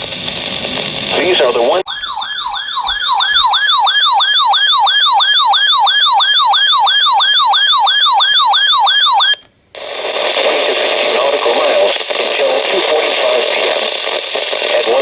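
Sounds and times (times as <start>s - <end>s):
electronic alarm falling sweeps: 1.9s - 9.4s.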